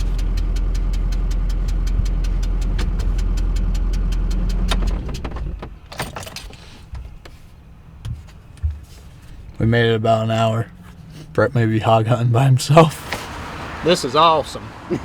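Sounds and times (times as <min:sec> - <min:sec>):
diesel engine running with ticking: 0:00.0 - 0:05.5.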